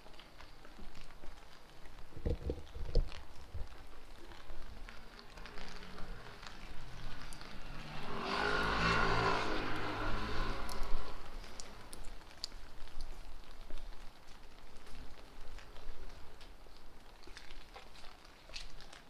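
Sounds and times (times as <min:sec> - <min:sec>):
rain drips tapping: 0:00.0 - 0:19.0
tyres hissing on wet road: 0:05.0 - 0:12.3
car engine passing: 0:05.5 - 0:12.0.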